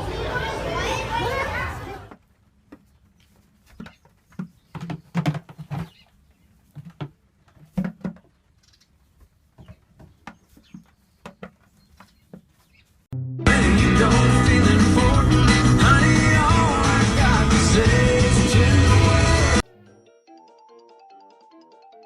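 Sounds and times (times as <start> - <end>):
loud rock music: 13.2 - 19.6.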